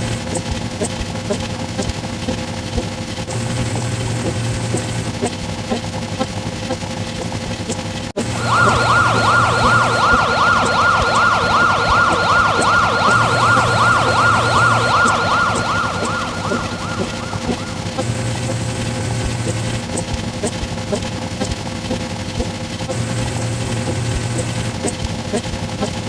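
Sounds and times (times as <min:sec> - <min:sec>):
emergency siren yelping: 0:08.2 - 0:18.2.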